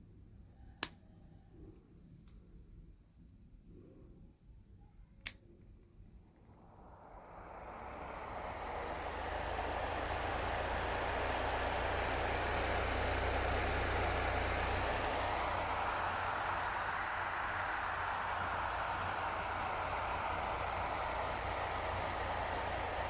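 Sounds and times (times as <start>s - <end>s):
low hum: 6.3s - 23.0s
fan whooshing: 6.4s - 23.0s.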